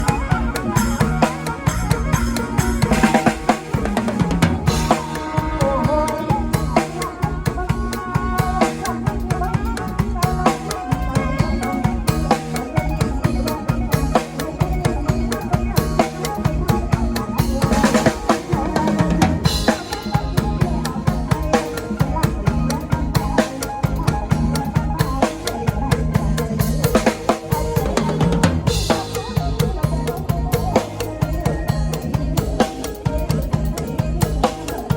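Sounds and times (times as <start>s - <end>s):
folk-pop instrumental with drum kit: 0.0s - 34.9s.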